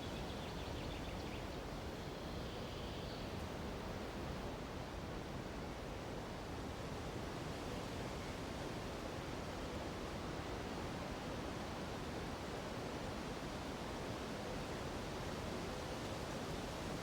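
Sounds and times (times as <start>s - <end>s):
wind through treetops: 0.0s - 4.7s.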